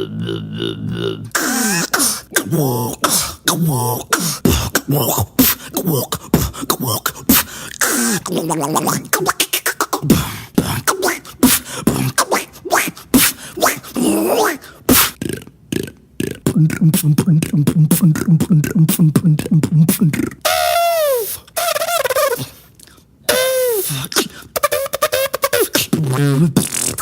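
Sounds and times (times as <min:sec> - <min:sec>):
sliding vocal tones: 0:00.0 - 0:27.0
beatboxing clicks and pops: 0:05.4 - 0:13.9, 0:14.9 - 0:20.5, 0:24.1 - 0:27.0.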